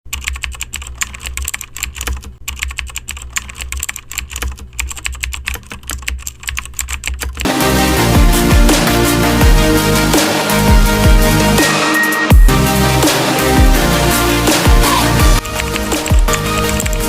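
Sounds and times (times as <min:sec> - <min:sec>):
keyboard typing clicks: 0:00.1 - 0:07.5, 0:15.4 - 0:17.0
electronic music with heavy beat: 0:07.5 - 0:17.0.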